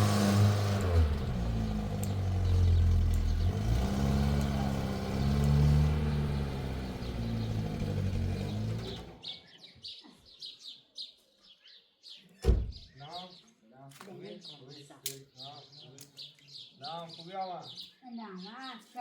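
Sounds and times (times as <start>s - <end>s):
vehicle engine running: 0.0s - 9.4s
birds chirping: 0.0s - 19.0s.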